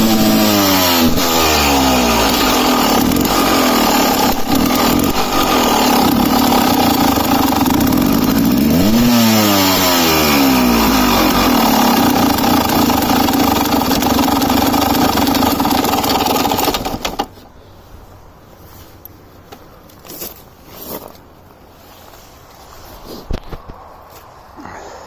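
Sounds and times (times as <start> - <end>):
two-stroke engine misfiring: 0.0 - 17.4.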